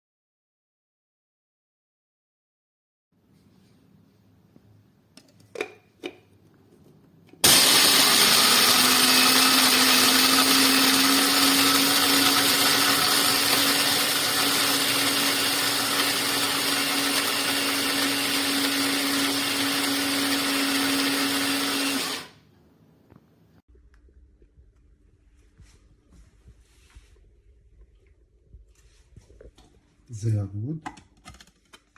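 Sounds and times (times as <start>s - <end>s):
coffee grinder motor humming: 7.4s - 22.4s.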